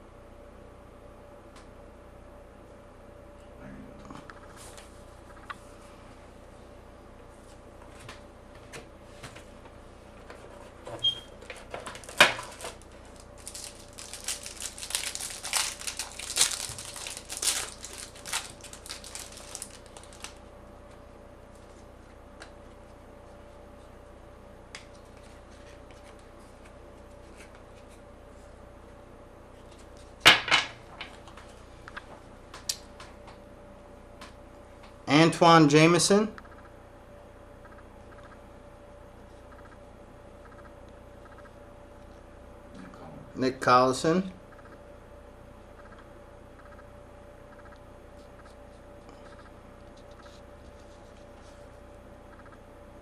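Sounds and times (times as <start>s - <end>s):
cards and packaging clicking: 11.5s - 20.4s
wrapper crinkling and tearing: 11.8s - 20.4s.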